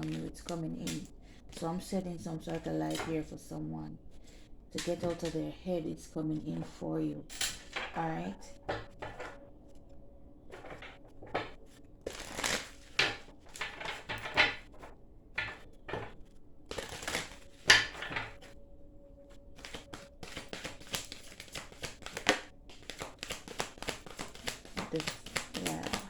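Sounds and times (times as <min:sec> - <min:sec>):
cards being shuffled: 0:04.8 - 0:05.4, 0:10.5 - 0:18.5, 0:19.6 - 0:26.0.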